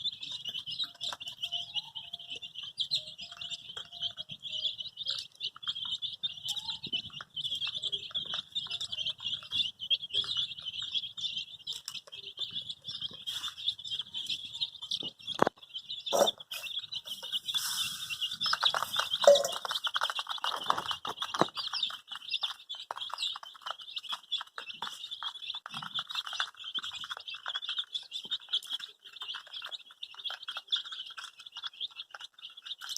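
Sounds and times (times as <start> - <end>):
baby chicks peeping: 0.0 - 32.9
scratching noise: 11.8 - 15.5, 16.1 - 25.2.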